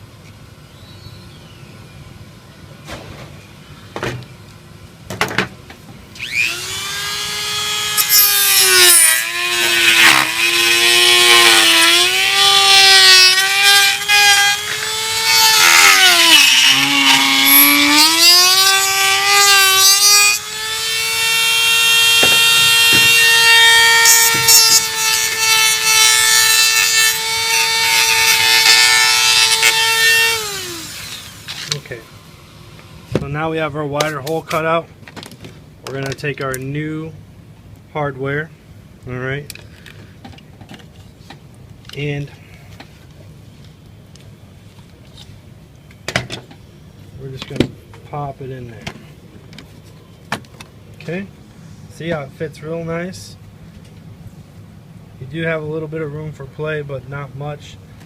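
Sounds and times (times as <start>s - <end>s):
rotary tool grinding: 6.2s - 31.9s.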